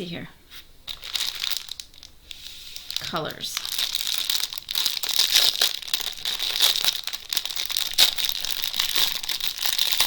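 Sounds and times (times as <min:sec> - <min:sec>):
plastic bags crinkling: 0:00.9 - 0:10.0.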